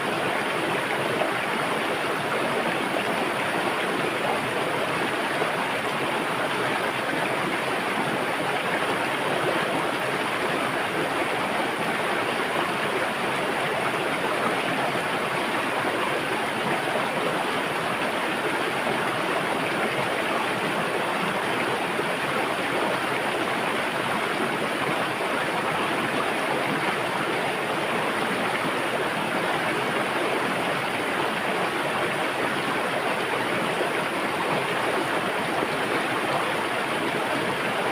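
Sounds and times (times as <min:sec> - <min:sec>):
river rushing over rocks: 0:00.0 - 0:37.9.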